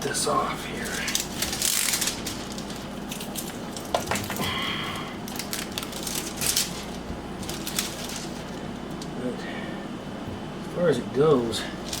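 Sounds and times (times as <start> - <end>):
tape crackling and rustling: 0.0 - 9.2, 11.8 - 12.0.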